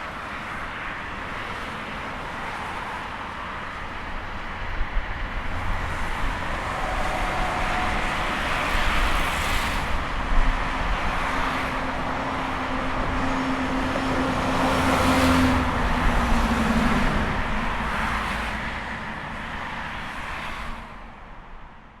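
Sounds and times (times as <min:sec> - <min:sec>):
highway traffic rushing: 0:00.0 - 0:22.0
passing vehicle engine hum: 0:04.2 - 0:20.8.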